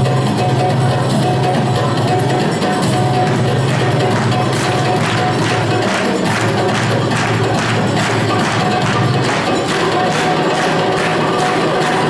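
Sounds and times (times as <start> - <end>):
loud dance music: 0.0 - 12.0
jingling hand percussion: 0.1 - 12.0.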